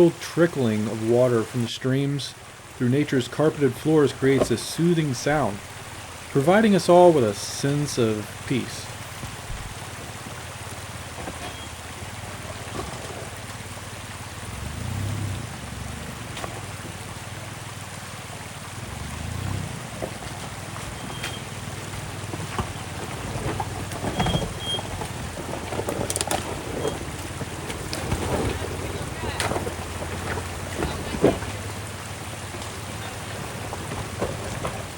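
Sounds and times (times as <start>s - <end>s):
truck engine rumble: 0.0s - 34.9s
tyres hissing on wet rock: 0.0s - 34.9s
rocks knocking and clicking: 3.3s - 6.4s, 7.2s - 14.1s, 16.2s - 17.2s, 19.8s - 34.9s.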